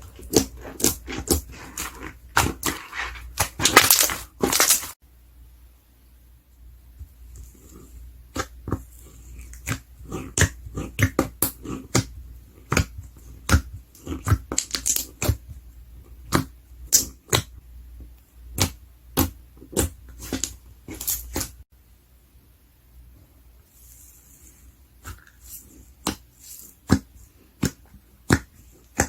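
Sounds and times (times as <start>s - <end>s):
slime squishing with pops and clicks: 8.3s - 15.5s, 16.2s - 21.6s, 25.0s - 29.0s.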